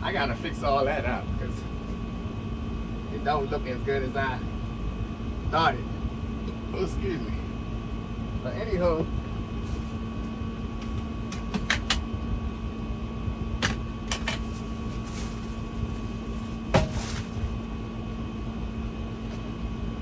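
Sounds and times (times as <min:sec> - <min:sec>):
steady appliance hum: 0:00.0 - 0:20.0
short rustle: 0:14.4 - 0:17.5.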